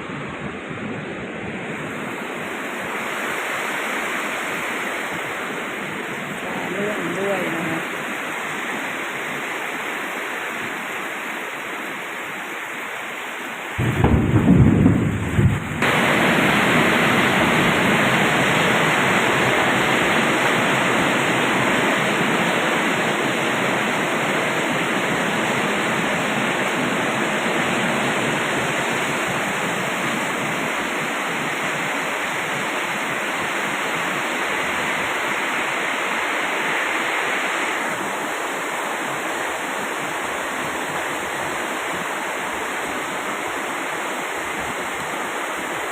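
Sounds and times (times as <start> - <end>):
heavy rain pouring: 0.0 - 45.9
low rumble of thunder: 13.8 - 19.6.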